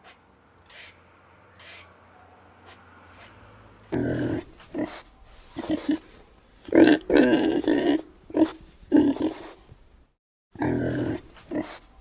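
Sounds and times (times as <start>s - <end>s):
pig grunting: 3.9s - 5.0s, 5.6s - 6.1s, 6.7s - 9.6s, 10.6s - 11.9s.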